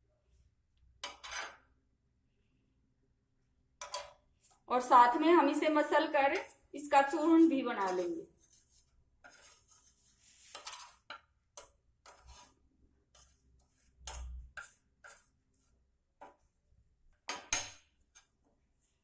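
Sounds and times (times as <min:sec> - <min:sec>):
utensil scraping in a pan: 0:06.2 - 0:16.4.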